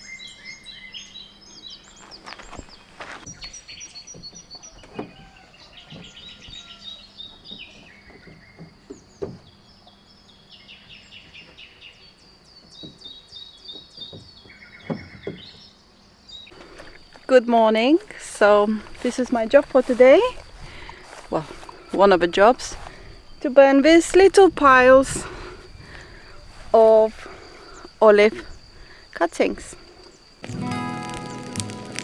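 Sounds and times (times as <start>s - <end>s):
small birds chirping: 0.0s - 32.0s
short knocks: 7.4s - 9.6s.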